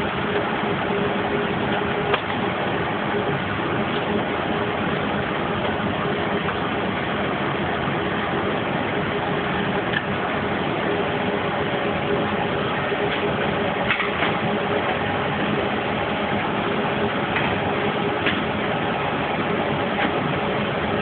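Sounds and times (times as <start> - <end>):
steady hum and hiss: 0.0 - 21.0.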